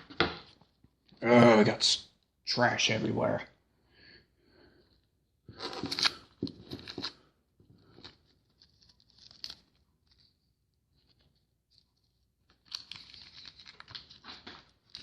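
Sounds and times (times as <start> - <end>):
foil wrappers crinkling: 12.4 - 15.0.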